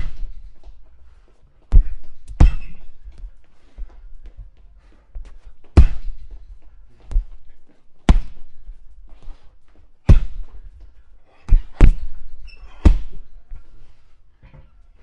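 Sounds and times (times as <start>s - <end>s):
punches thudding on punching bag: 0.0s - 0.3s, 1.7s - 3.0s, 5.7s - 6.3s, 8.0s - 8.5s, 10.0s - 10.5s, 11.5s - 13.3s.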